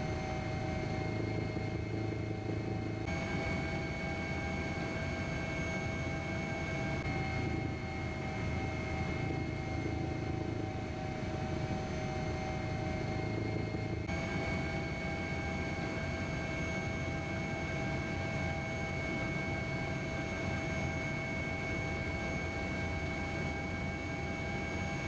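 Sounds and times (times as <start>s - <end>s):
low mechanical rumble with whining tones: 0.0s - 25.0s.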